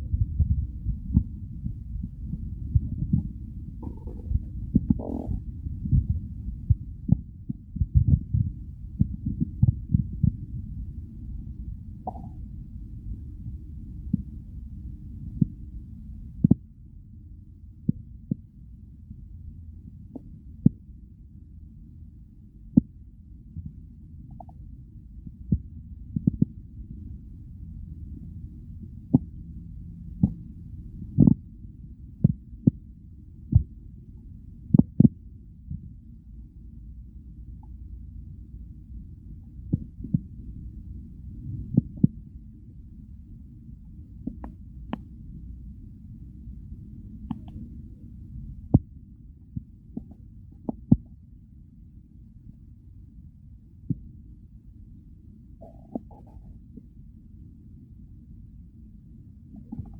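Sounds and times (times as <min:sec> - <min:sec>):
low muffled stomach rumble: 0:00.0 - 0:59.9
stomach growling: 0:02.7 - 0:06.2, 0:12.1 - 0:12.5, 0:55.6 - 0:56.8, 0:59.5 - 0:59.9.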